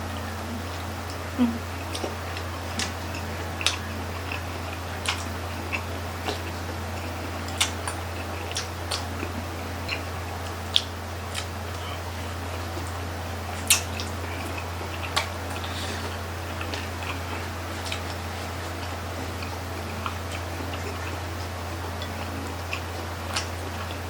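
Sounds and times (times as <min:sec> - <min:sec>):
people chewing: 0:00.0 - 0:24.0
steady low hum: 0:00.0 - 0:24.0.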